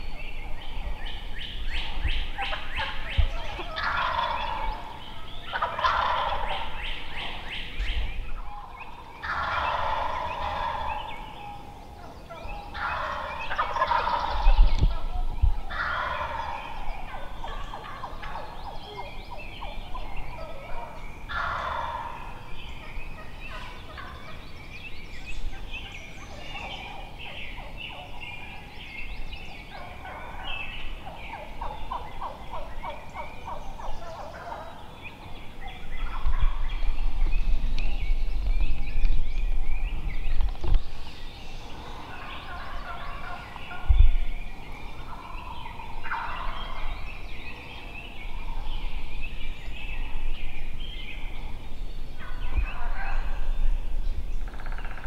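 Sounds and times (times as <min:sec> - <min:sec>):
turkeys gobbling: 0:00.5 - 0:07.8, 0:08.4 - 0:24.4, 0:25.5 - 0:28.8, 0:29.4 - 0:36.9, 0:41.8 - 0:43.9, 0:44.5 - 0:48.8, 0:52.2 - 0:53.4, 0:54.4 - 0:55.0.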